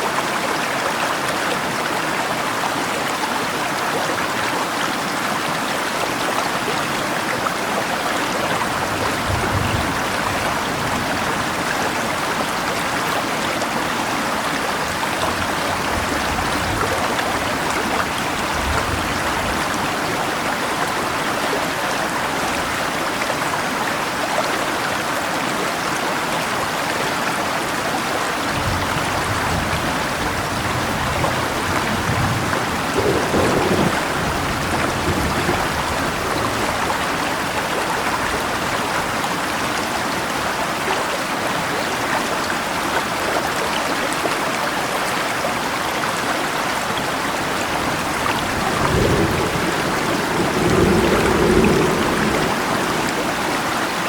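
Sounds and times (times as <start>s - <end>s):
rain falling: 0.0s - 54.0s
river rushing: 0.0s - 54.0s
low rumbles: 47.9s - 54.0s.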